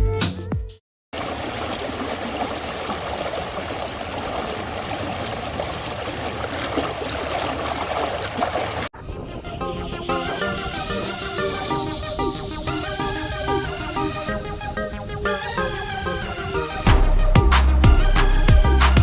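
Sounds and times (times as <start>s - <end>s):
background music: 9.0s - 19.0s.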